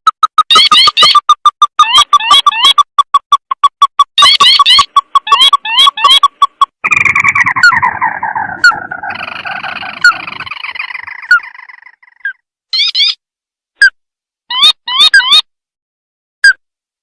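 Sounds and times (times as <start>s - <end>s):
recorded crake call: 0.0s - 13.2s.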